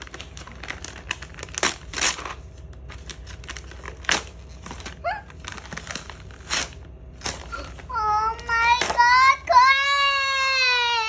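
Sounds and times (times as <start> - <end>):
gift wrapping crinkling: 0.0 - 11.0.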